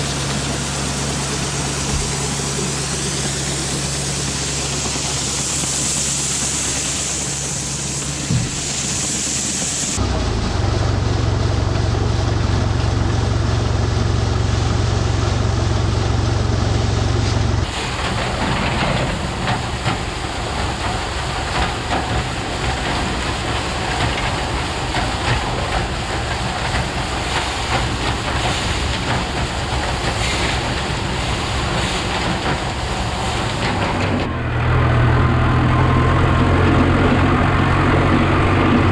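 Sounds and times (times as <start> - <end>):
farm machinery hissing: 0.0 - 38.9
heavy low engine hum: 0.0 - 38.9
rattling machine noise: 15.7 - 38.9.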